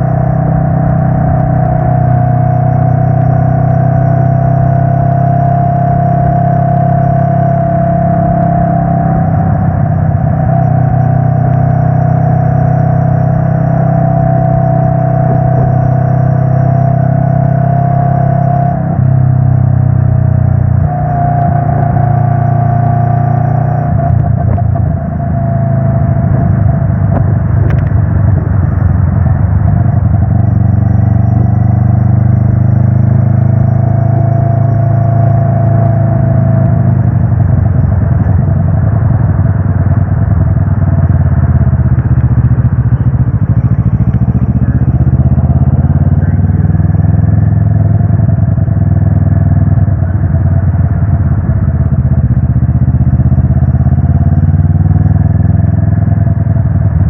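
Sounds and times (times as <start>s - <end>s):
motorcycle engine drone: 0.0s - 57.0s
wind rush on microphone: 20.7s - 32.8s, 35.6s - 52.7s.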